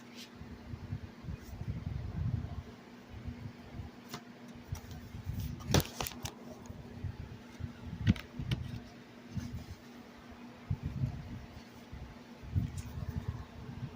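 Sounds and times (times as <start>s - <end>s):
faint steady hum: 0.0s - 13.9s.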